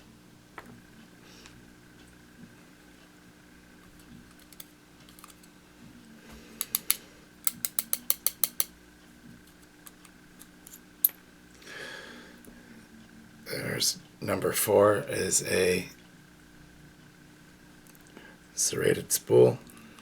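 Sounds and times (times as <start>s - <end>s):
tweezers clicking on metal pins: 6.6s - 8.8s.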